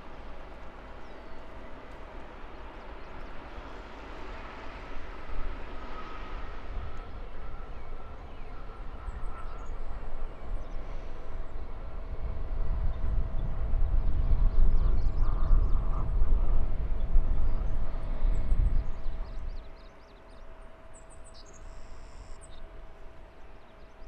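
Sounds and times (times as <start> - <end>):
jet airliner engines: 0.0 - 24.0.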